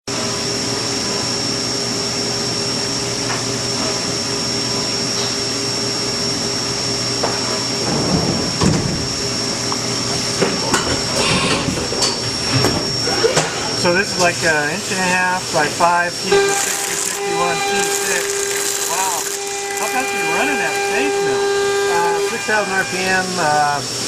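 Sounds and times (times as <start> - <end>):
milling machine hum and whine: 0.1 - 24.0
machine knocks and rattles: 7.8 - 12.8.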